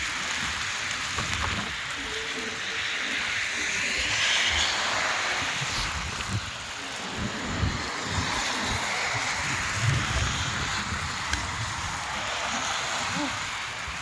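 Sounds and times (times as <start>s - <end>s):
wind buffeting microphone: 0.0s - 14.0s
wind rushing: 3.0s - 14.0s.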